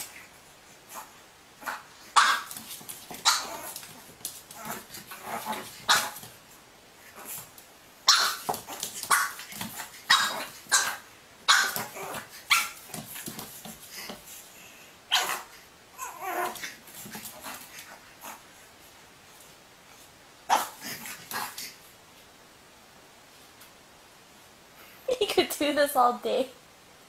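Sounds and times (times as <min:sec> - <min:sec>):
dog barking: 0:10.1 - 0:11.9.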